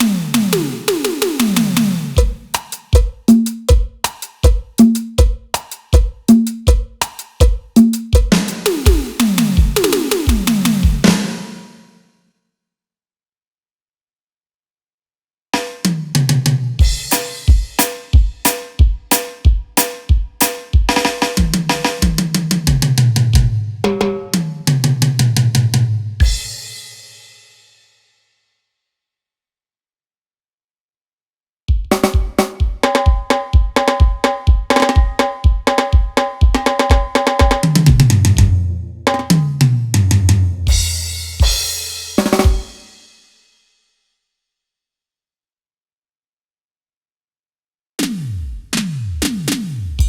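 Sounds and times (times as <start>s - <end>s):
electronic drum hits: 8.2s - 11.4s, 48.0s - 50.0s.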